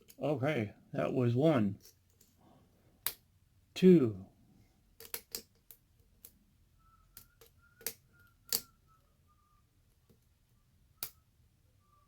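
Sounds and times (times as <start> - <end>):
lock pick clicks: 5.0 - 6.4, 7.1 - 8.7
faint thin wavering tone: 6.8 - 9.9.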